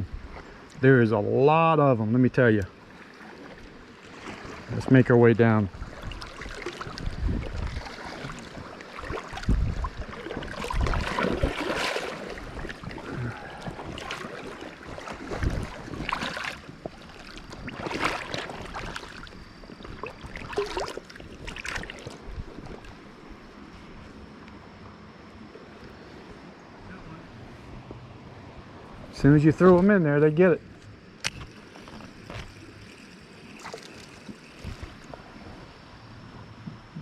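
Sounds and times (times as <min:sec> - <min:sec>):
water sloshing and splashing: 0:02.4 - 0:24.1, 0:28.7 - 0:37.0
wind buffeting microphone: 0:04.8 - 0:23.3.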